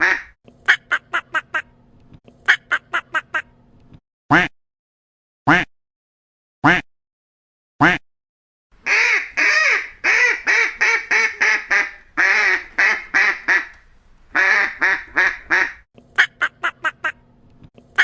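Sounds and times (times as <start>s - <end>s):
duck quacking: 0.0s - 0.3s, 8.8s - 15.8s
faint steady hum: 8.8s - 15.8s.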